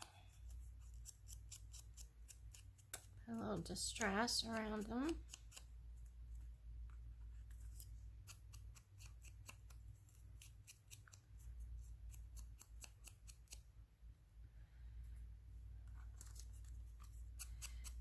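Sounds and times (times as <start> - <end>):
scissors snipping paper: 0.0 - 5.8, 7.4 - 13.7, 16.0 - 18.0.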